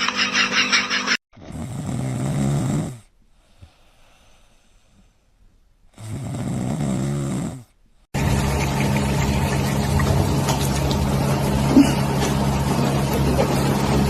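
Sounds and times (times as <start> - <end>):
pet snoring loudly: 1.4 - 3.1, 5.9 - 7.8.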